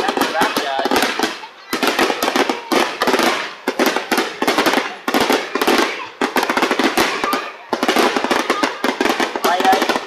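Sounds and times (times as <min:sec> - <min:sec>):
fireworks cracks and pops: 0:00.0 - 0:10.0.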